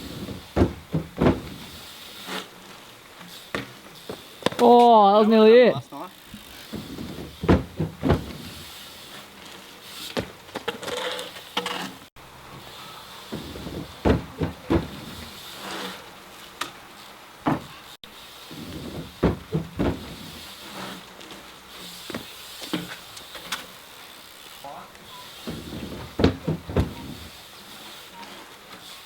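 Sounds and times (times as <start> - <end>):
tyres rolling on plywood: 0.0 - 4.7, 6.3 - 8.7, 13.2 - 16.0, 17.4 - 17.8, 18.5 - 23.5, 25.4 - 28.0
bike rattling: 0.0 - 29.0
wheels thumping on wood: 0.0 - 29.0.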